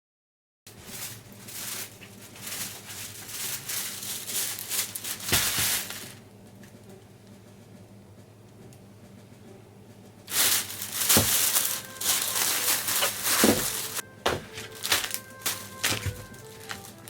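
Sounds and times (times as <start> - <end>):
plastic packaging crinkling: 0.7 - 6.2, 10.3 - 17.0
faint steady hum: 0.7 - 17.0.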